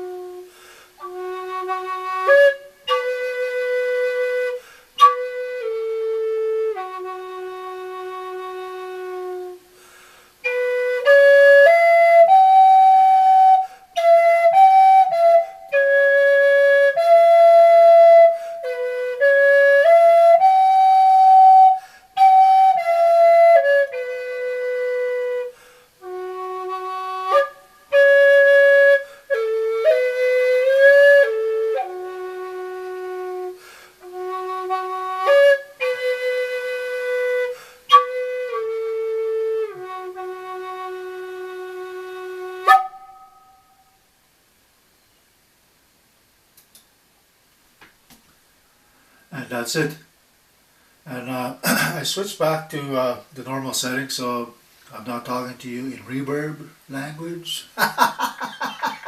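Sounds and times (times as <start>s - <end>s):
flute playing slow melody: 0.0s - 44.1s.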